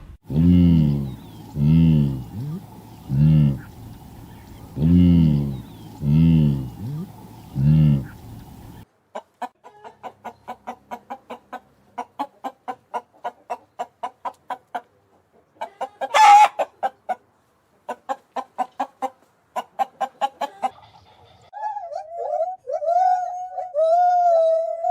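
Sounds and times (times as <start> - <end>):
chicken clucking: 0.3 - 23.9
chicken squawk: 15.6 - 17.2, 17.9 - 24.9.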